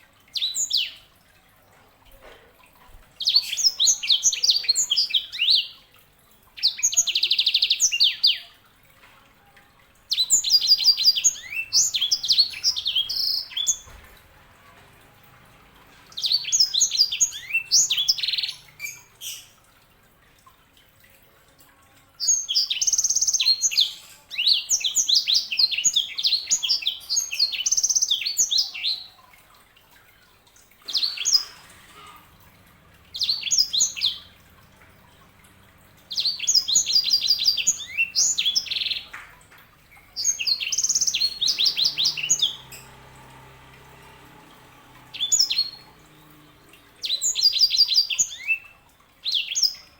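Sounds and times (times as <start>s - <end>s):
canary singing: 10.1s - 14.1s, 15.4s - 19.6s, 30.8s - 49.9s.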